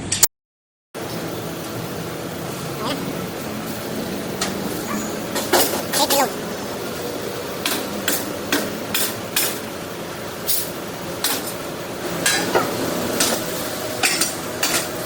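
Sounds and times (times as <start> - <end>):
steady background noise: 1.0 - 15.0
sharp metal clanking knocks: 4.4 - 6.4, 7.6 - 9.7, 12.2 - 14.9.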